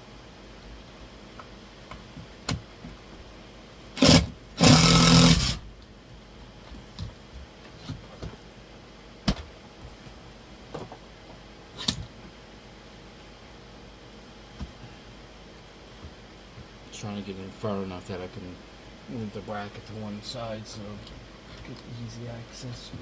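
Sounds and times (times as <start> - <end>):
power drill driving a screw: 4.0 - 5.6.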